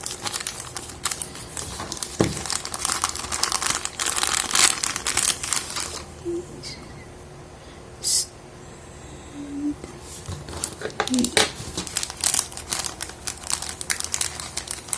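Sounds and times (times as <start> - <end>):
plastic packaging crinkling: 0.0 - 6.2, 10.0 - 14.9.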